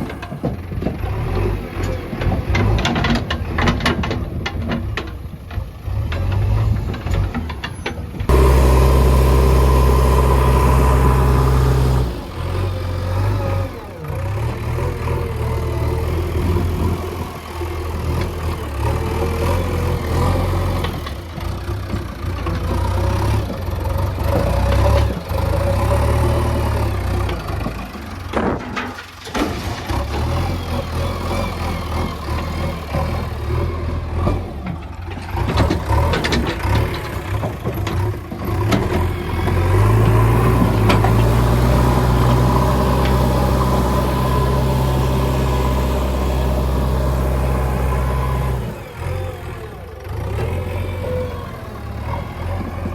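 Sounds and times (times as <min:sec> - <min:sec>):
diesel backhoe engine working: 0:00.0 - 0:52.9.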